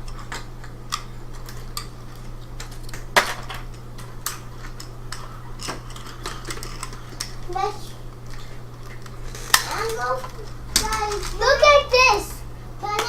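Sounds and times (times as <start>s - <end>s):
steady low hum: 0.0s - 13.0s
plastic toy parts clicking: 4.2s - 7.4s.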